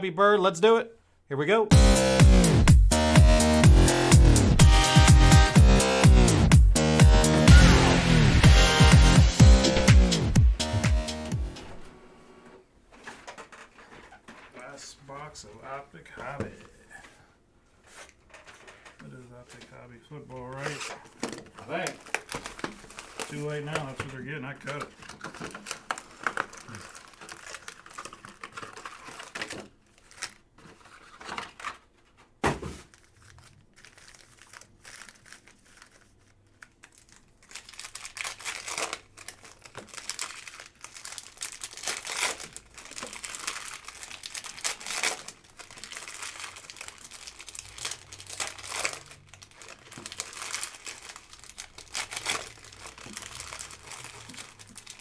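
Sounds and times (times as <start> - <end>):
plastic wrapping crinkling and tearing: 17.9 - 55.0.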